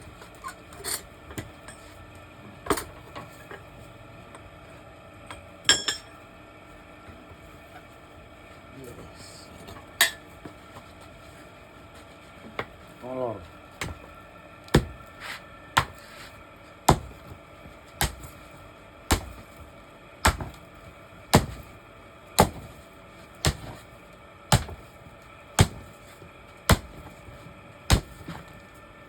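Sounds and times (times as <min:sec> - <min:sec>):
hammer striking steel: 0:15.8 - 0:16.0, 0:16.9 - 0:17.2, 0:18.0 - 0:18.4, 0:19.1 - 0:19.5, 0:20.3 - 0:20.6, 0:21.3 - 0:21.7, 0:22.4 - 0:22.8, 0:23.4 - 0:23.8, 0:24.5 - 0:24.9, 0:25.6 - 0:25.9, 0:26.7 - 0:27.1, 0:27.9 - 0:28.4.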